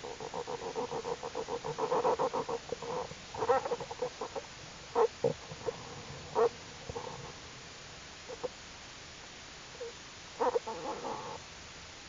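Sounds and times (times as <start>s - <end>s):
bear cubs nursing hum: 0.0s - 7.6s, 9.7s - 11.5s.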